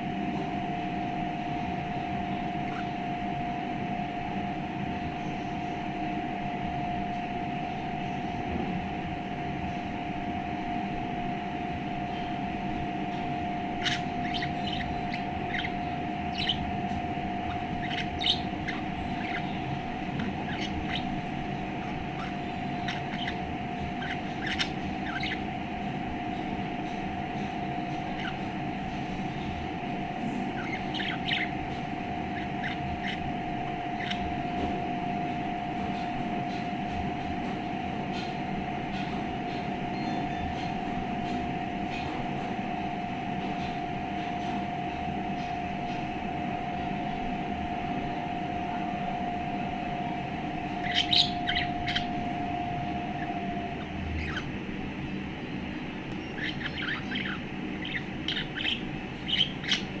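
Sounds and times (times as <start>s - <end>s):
steady single-pitched hum: 0.0s - 60.0s
budgerigar chirping: 13.8s - 25.5s, 30.2s - 34.4s, 50.7s - 52.2s, 52.9s - 54.5s, 56.2s - 60.0s.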